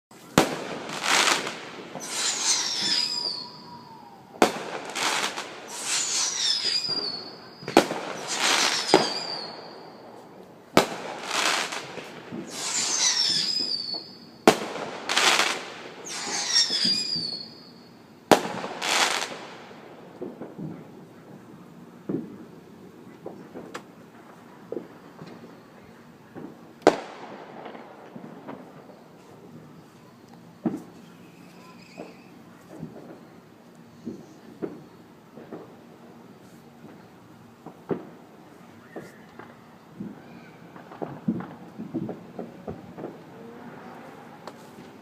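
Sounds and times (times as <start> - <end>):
hissing crackle: 0.1 - 21.6, 22.2 - 45.0
fireworks bangs: 0.1 - 45.0
high falling whistle: 2.0 - 4.4, 5.7 - 10.0, 12.5 - 14.3, 16.0 - 17.9.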